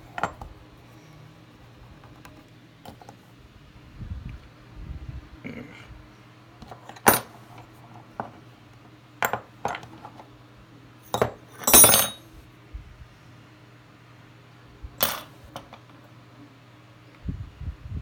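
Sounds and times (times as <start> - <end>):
steel rifle parts clinking: 11.1 - 12.2.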